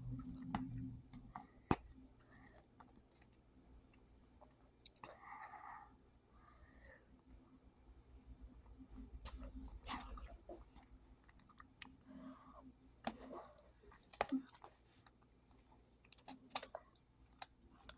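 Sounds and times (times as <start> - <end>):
person chewing: 0.0 - 3.4, 8.9 - 17.9.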